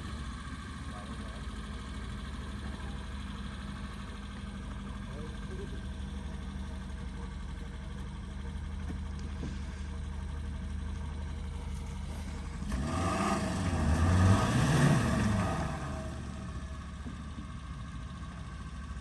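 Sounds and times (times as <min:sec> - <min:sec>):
engine running and revving: 0:08.8 - 0:19.0.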